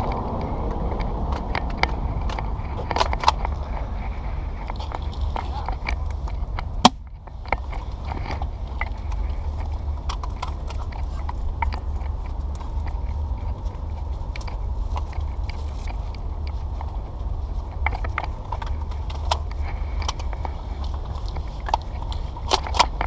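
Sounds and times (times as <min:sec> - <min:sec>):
steady low rumble: 0:00.0 - 0:23.0
airsoft guns clicking and snapping: 0:00.7 - 0:03.8, 0:17.8 - 0:23.0.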